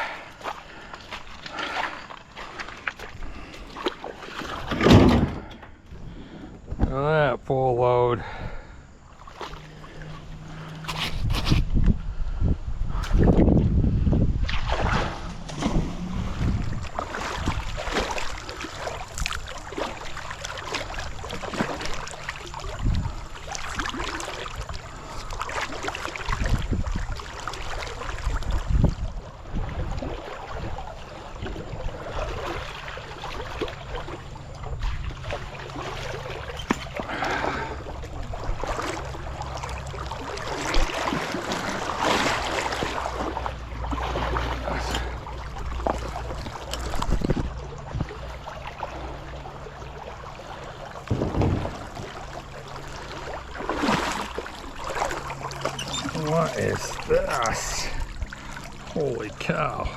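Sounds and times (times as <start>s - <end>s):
water splashing and sloshing: 0.0s - 59.9s
kayak knocks: 4.4s - 5.7s, 51.0s - 52.5s.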